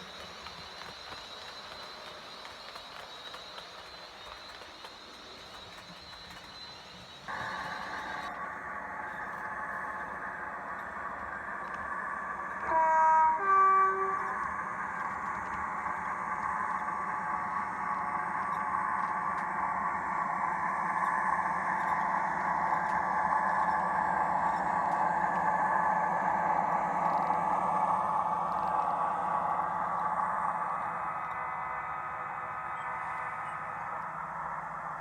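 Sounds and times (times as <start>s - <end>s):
locomotive engine running: 0.0s - 35.0s
diesel locomotive two-tone horn: 12.6s - 14.7s.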